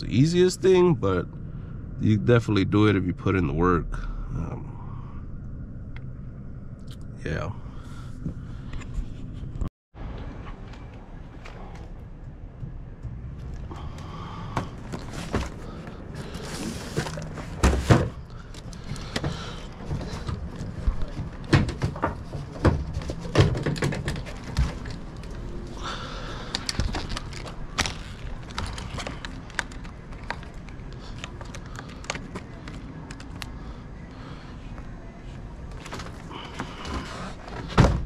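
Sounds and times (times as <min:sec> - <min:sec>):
knocks and thuds of products: 0:16.7 - 0:18.2, 0:18.9 - 0:24.9, 0:36.5 - 0:38.0
packaging rustling: 0:26.4 - 0:33.4.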